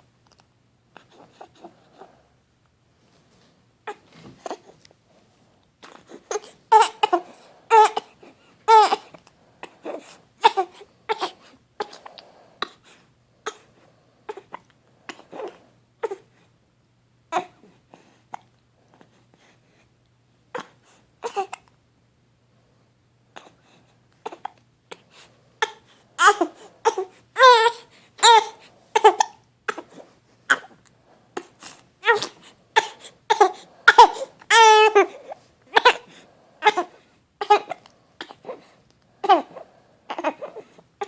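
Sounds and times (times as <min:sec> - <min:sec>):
child hiccuping: 0:25.6 - 0:29.9, 0:30.5 - 0:30.8.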